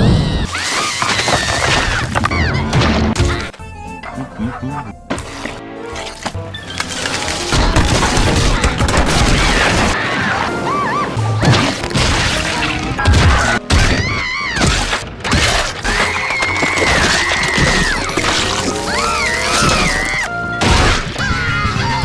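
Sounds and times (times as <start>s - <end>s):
cartoon music: 3.2s - 5.2s.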